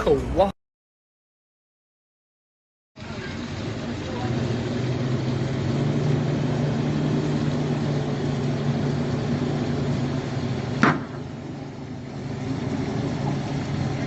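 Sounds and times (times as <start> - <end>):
sharp knock: 10.8 - 11.2.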